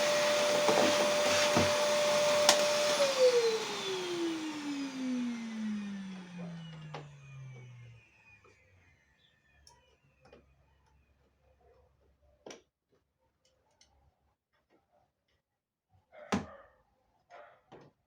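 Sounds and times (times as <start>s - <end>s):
electric motor whining: 0.0s - 8.6s.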